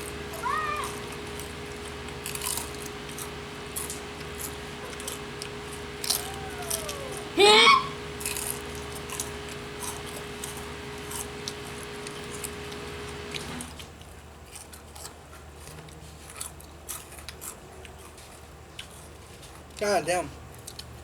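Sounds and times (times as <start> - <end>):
steady hum: 0.0 - 13.8
crunchy chips being eaten: 0.5 - 12.6, 13.8 - 21.0.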